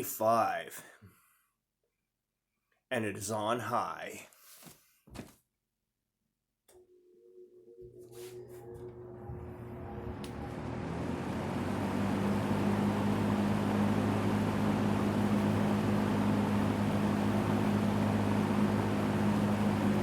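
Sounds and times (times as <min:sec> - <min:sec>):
low motor hum: 0:06.7 - 0:20.0
box fan air rushing: 0:10.2 - 0:20.0.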